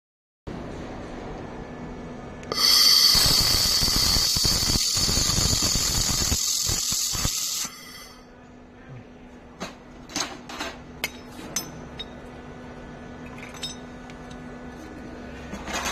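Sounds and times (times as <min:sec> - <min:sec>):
loud hiss with high whine: 0:02.5 - 0:08.2
welding machine humming: 0:02.5 - 0:08.3.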